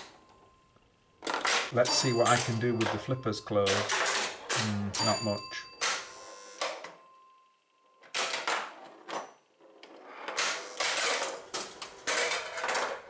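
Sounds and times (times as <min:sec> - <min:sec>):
pinball relay and solenoid clicks: 0:01.2 - 0:07.0, 0:08.0 - 0:09.4, 0:10.3 - 0:13.0.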